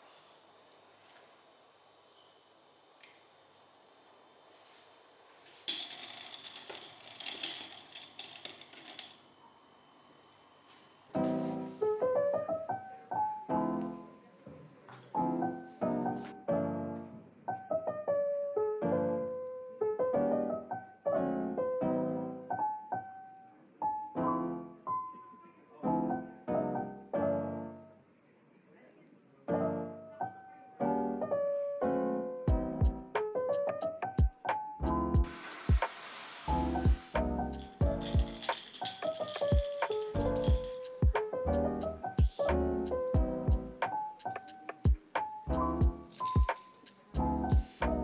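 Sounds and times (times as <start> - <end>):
clattering and rustling: 4.6 - 9.6, 35.2 - 42.2, 43.9 - 48.0
gentle piano music: 9.2 - 28.1, 29.4 - 48.0.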